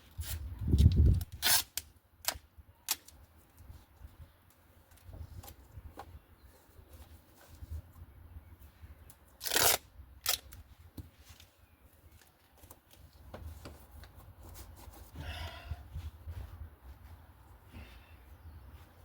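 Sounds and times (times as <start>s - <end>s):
adhesive tape ripping off roll: 0.1s - 3.2s, 9.4s - 10.6s.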